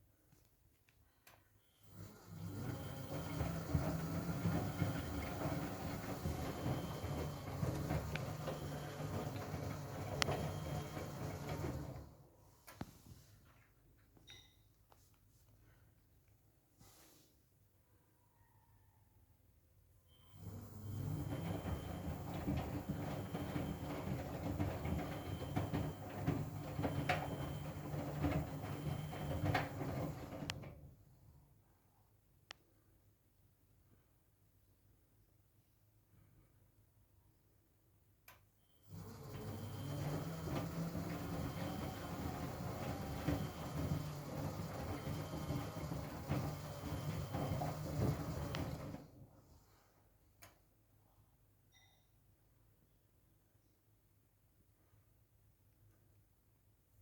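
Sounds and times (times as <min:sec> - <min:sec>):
washing machine motor hum: 0:01.8 - 0:12.4, 0:20.2 - 0:31.0, 0:38.8 - 0:49.4.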